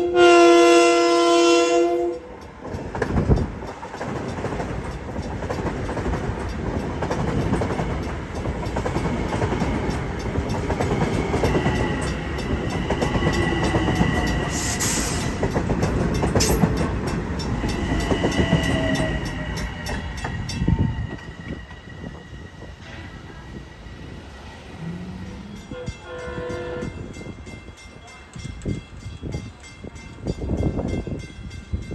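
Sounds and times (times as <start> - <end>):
train passing with rumble: 0.0 - 31.9
wheels clacking over rail joints: 2.2 - 21.9.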